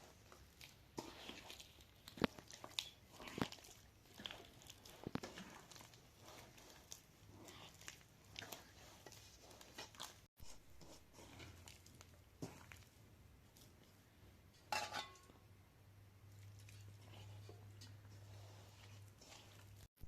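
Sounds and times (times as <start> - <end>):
dishes clattering: 14.7 - 15.3.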